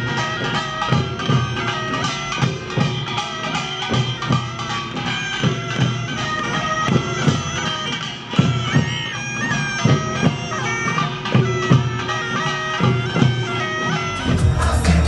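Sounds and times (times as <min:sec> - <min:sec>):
drum beats: 0:00.0 - 0:15.0
reed wind instrument melody: 0:00.0 - 0:15.0
steady drone: 0:14.0 - 0:15.0.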